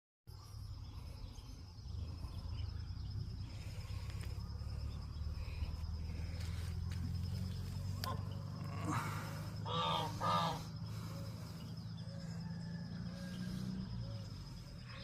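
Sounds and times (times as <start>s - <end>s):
faint bird chirps: 0.3s - 15.0s
insect trilling: 0.3s - 15.0s.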